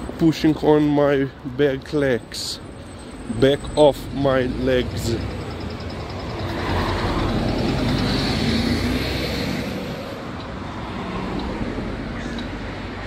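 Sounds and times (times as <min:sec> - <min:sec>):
car driving past: 0:04.4 - 0:10.2.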